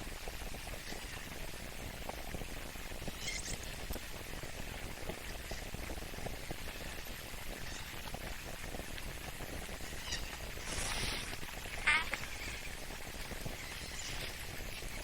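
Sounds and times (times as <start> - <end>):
steady hiss: 0.0 - 15.0
breathy noise: 10.6 - 12.7.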